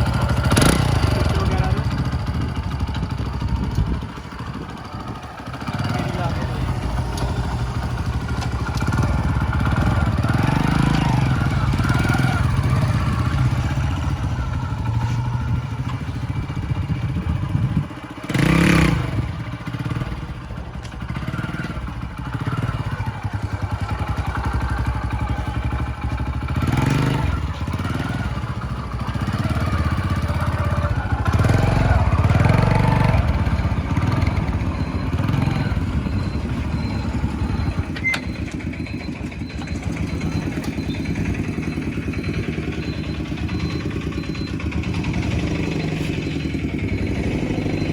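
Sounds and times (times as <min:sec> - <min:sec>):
motorcycle engine revving: 0:00.0 - 0:47.9.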